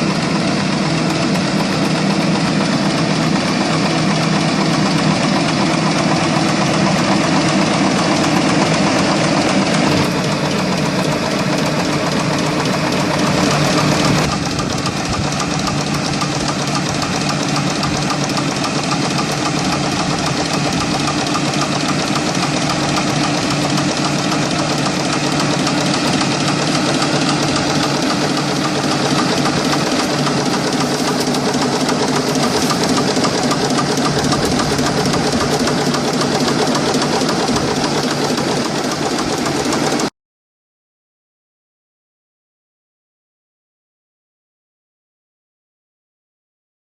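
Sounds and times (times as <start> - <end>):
tractor engine running: 0.0 - 40.1.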